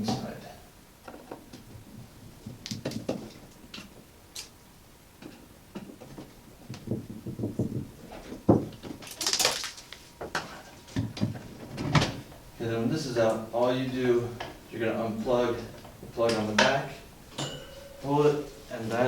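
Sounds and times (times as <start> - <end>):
clicks and knocks on plastic: 2.4 - 3.9, 5.2 - 9.7.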